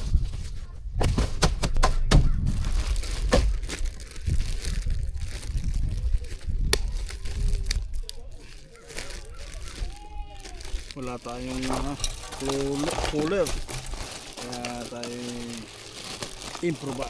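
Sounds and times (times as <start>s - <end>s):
wind buffeting microphone: 0.0s - 14.1s
clicks and knocks of objects: 11.5s - 15.1s.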